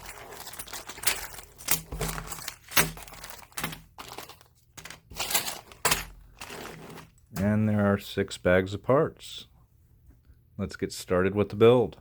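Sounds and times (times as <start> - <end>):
plastic bags crinkling: 0.0 - 7.3.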